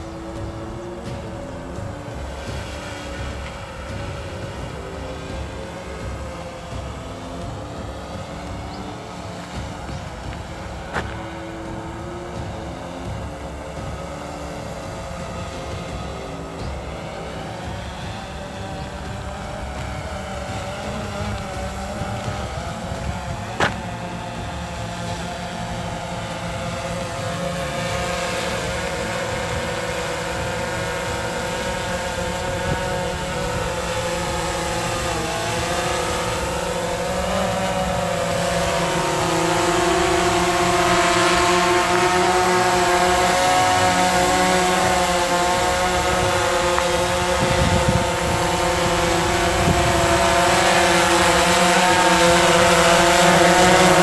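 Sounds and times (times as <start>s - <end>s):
drone propellers whirring: 0.0s - 54.0s.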